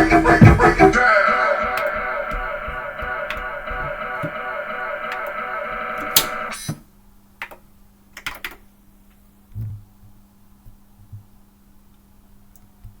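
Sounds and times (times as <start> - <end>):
music: 0.0 - 6.6.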